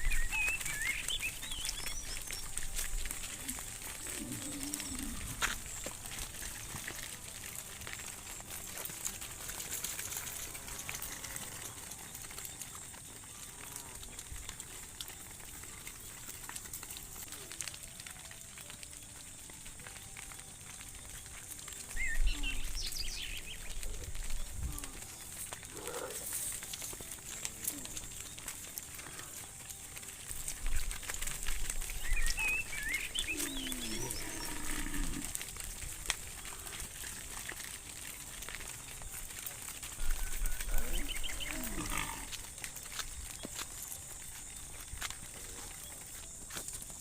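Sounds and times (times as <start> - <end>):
small rustles and clicks: 0.0 - 47.0.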